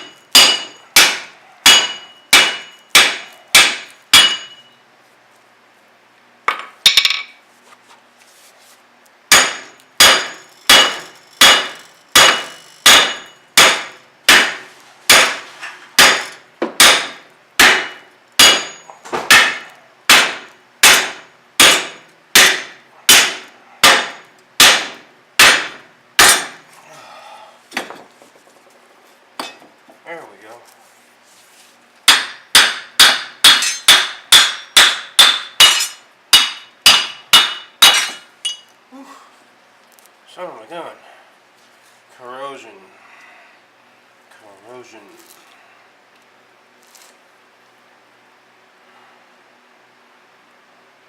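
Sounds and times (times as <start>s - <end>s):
hammer striking steel: 0.0s - 4.8s, 9.3s - 15.4s, 16.0s - 26.6s, 32.1s - 38.7s.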